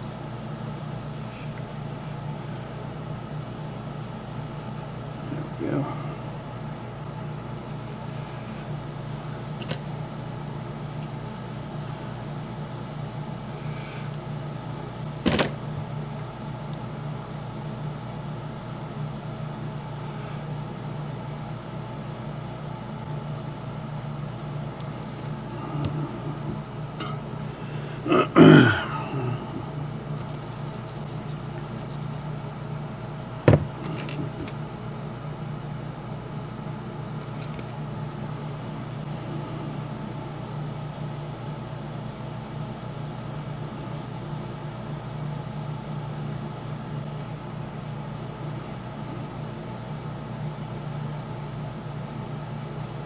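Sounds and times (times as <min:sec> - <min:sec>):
low machinery hum: 0:00.0 - 0:53.0
person making low vocal sound: 0:05.2 - 0:06.3, 0:25.4 - 0:30.4, 0:33.7 - 0:34.6.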